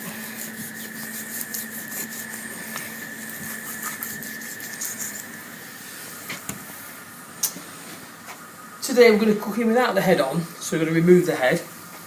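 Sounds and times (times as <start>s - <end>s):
knife scraping meat and bone: 0.0s - 5.4s
steady background hum: 0.0s - 12.0s.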